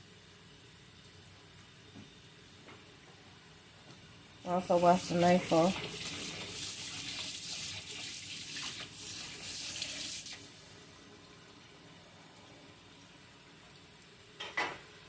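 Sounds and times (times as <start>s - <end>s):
tap water running: 3.8s - 14.6s.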